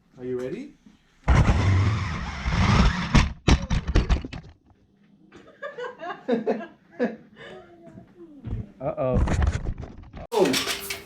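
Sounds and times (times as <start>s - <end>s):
toy car motor and tyres rushing: 1.3s - 3.4s.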